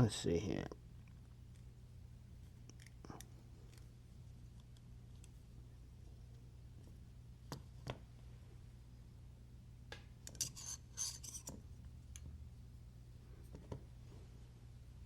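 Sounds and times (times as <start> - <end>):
metal parts scraping: 10.4 - 11.5.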